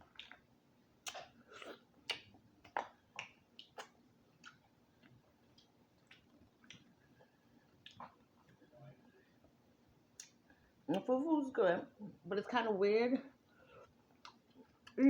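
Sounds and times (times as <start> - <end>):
wet chewing with lip smacks: 0.1 - 0.4, 1.0 - 8.7.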